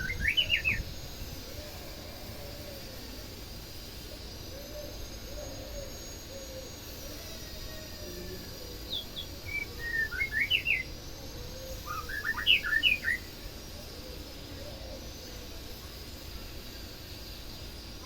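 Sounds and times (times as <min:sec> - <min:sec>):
bird whistled song: 0:00.0 - 0:00.8, 0:08.9 - 0:11.0, 0:11.6 - 0:13.4.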